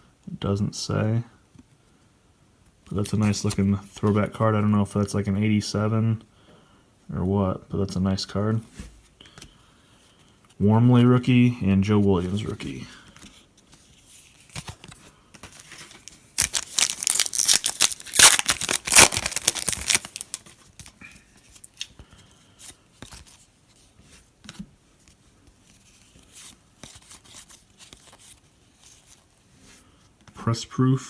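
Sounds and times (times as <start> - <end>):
cards being handled: 12.0 - 30.4
card pack wrapper tearing: 15.8 - 22.0.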